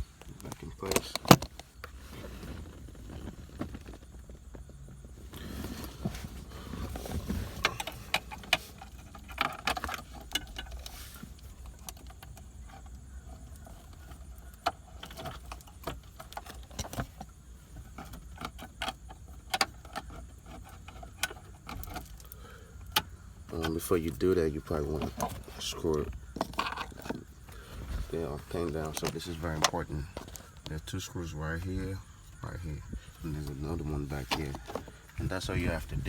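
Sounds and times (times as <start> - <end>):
plastic trim clicks and rattles: 0.2 - 1.7.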